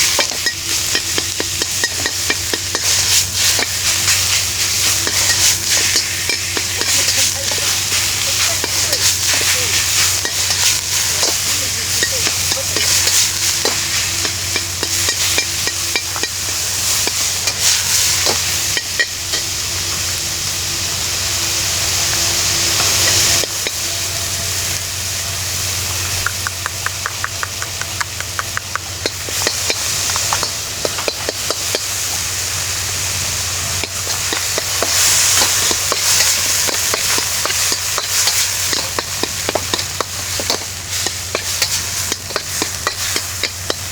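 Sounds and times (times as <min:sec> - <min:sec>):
food sizzling in a pan: 0:00.0 - 0:43.9
utensil clicking and scraping: 0:33.8 - 0:43.9.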